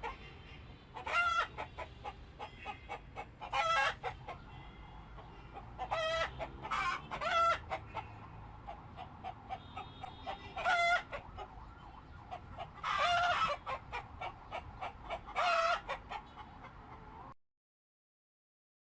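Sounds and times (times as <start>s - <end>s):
chickens clucking: 0.0s - 0.3s, 0.9s - 17.4s
loud short chicken calls: 1.0s - 4.5s, 5.2s - 8.1s, 9.2s - 11.5s, 12.8s - 14.0s, 15.1s - 16.2s.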